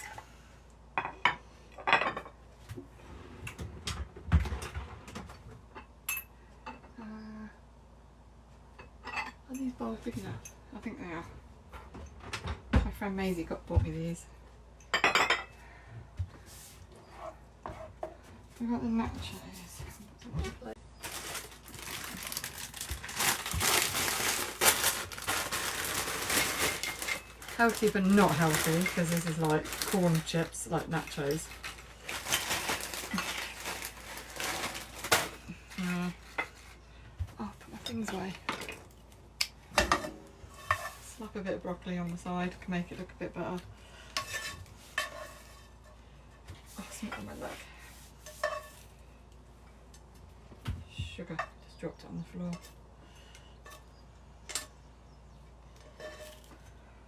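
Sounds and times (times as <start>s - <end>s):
dishes knocking and clattering: 1.0s - 2.8s, 14.9s - 15.6s
plastic chip packet crinkling: 21.0s - 35.8s.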